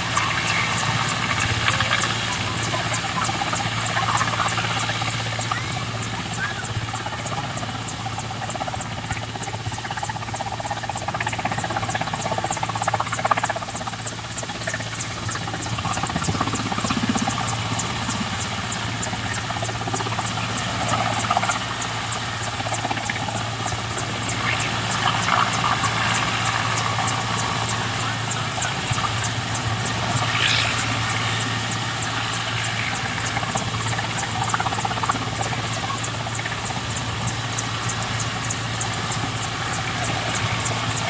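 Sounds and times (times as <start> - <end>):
helicopter drone and pulsing hiss: 0.0 - 41.0.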